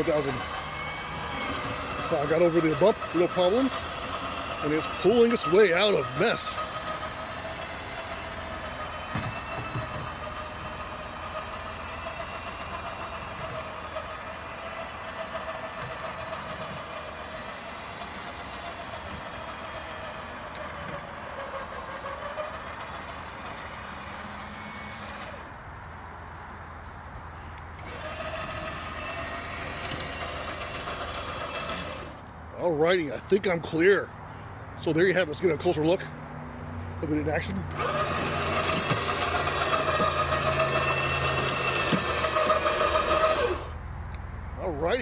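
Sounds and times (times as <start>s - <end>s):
electric winch motor whining: 0.0s - 25.7s, 27.7s - 32.3s, 37.4s - 43.8s.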